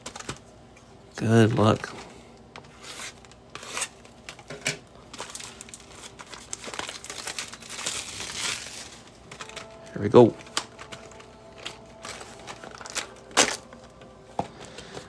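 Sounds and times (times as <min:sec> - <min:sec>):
plastic wrapping crinkling and tearing: 0:05.1 - 0:14.0.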